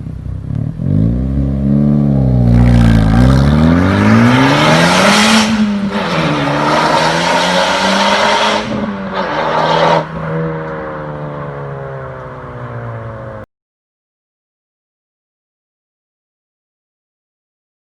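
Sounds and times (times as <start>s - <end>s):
car engine revving hard: 0.8s - 10.2s.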